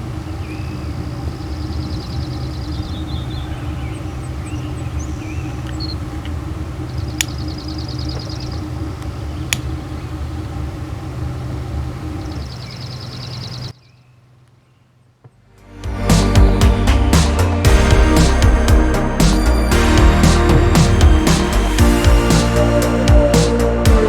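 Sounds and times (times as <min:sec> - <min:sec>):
birds chirping and trilling: 0:00.0 - 0:15.2.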